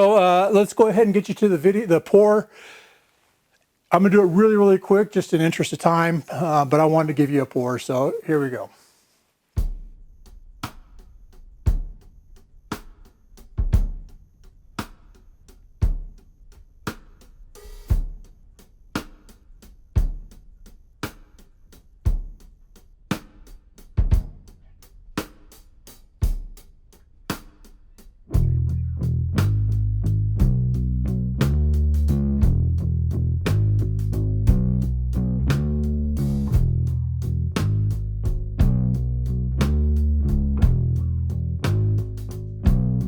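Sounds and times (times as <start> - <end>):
drum kit playing a steady beat: 0.0 - 2.1, 9.5 - 43.0
bass and guitar: 28.3 - 43.0.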